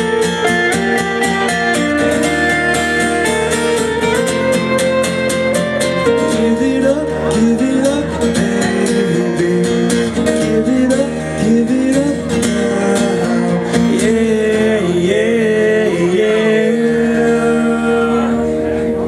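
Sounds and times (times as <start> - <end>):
acoustic guitar strumming: 0.0 - 19.0
person singing long notes: 6.0 - 19.0.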